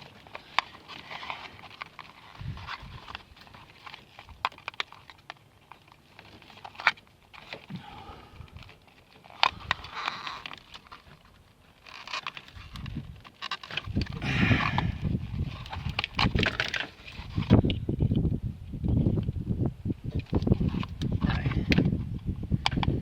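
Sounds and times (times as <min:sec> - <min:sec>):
rustling handling noise: 0:00.0 - 0:18.2.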